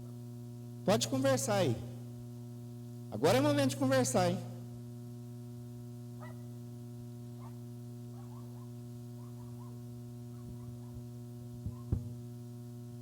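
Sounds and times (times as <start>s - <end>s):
electrical hum: 0.0s - 13.0s
soft thumps: 10.4s - 12.2s.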